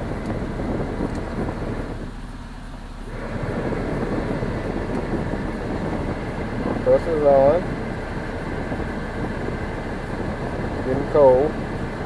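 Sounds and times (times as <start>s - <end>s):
cabin blower fan running: 0.0s - 12.0s
car engine idling: 0.0s - 12.0s.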